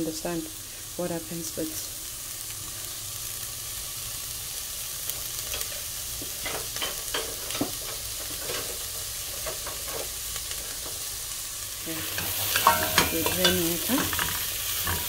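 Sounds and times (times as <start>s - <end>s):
onions sizzling in a pot: 0.0s - 15.0s
spoon scraping and knocking pot: 12.2s - 15.0s.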